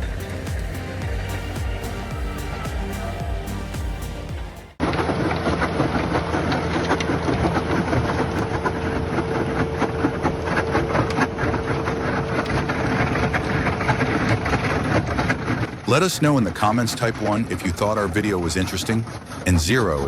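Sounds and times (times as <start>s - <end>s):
heavy machine engine clattering: 0.0s - 3.4s
steady whine: 0.0s - 13.6s.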